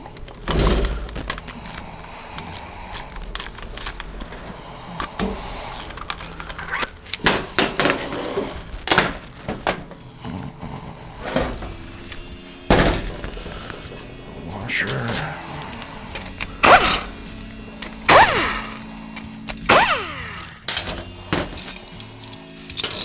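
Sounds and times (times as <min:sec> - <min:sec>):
metal parts clanking: 0:00.0 - 0:10.0, 0:14.8 - 0:23.0.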